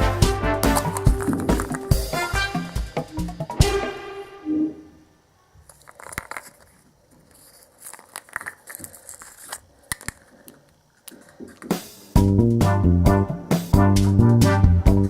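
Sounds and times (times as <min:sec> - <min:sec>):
wrapper crinkling and tearing: 0:00.6 - 0:02.2, 0:05.7 - 0:11.4.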